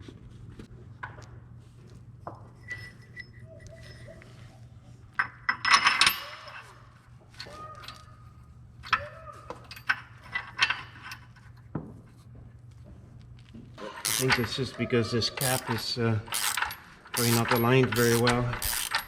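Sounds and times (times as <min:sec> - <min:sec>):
metal parts clattering: 0:05.5 - 0:06.8, 0:09.6 - 0:11.4, 0:13.9 - 0:19.0
metal parts knocking: 0:14.0 - 0:14.6, 0:15.4 - 0:19.0.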